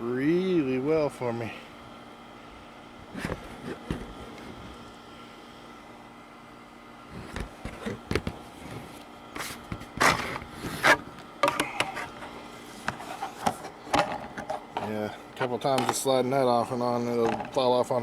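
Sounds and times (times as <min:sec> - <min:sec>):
plastic cover scraping: 0:07.1 - 0:16.0
plastic cover clicks and knocks: 0:11.4 - 0:11.9.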